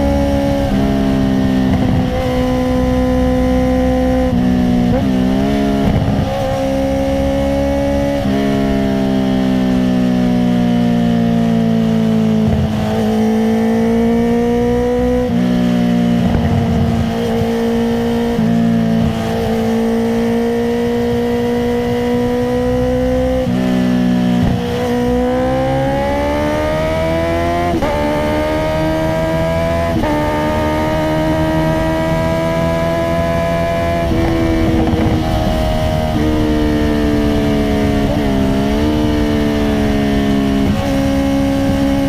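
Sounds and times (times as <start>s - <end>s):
motorcycle engine with crackles: 24.3s - 24.9s, 34.0s - 36.8s.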